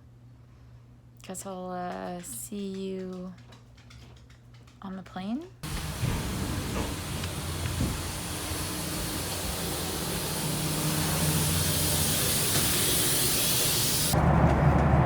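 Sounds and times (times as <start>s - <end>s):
cabin rushing hiss: 5.6s - 14.2s
low engine hum: 5.6s - 15.0s.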